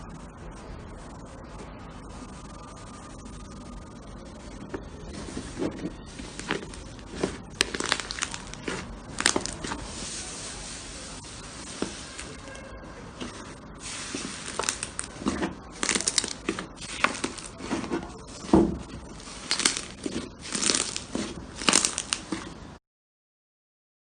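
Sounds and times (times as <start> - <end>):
slime popping and crackling: 5.2 - 9.9, 13.2 - 22.6.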